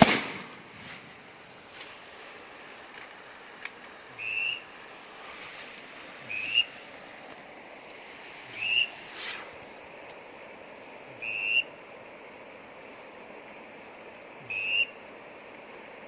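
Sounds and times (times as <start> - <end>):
steady background hiss: 0.0 - 16.0
whistle duck call: 4.2 - 4.7, 6.2 - 6.8, 8.5 - 9.0, 11.1 - 11.8, 14.4 - 15.1.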